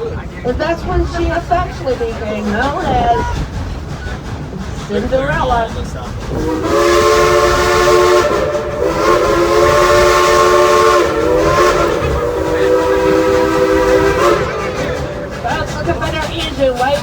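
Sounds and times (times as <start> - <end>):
steam hissing: 0.0 - 17.0
steam locomotive chime whistle: 5.5 - 15.8.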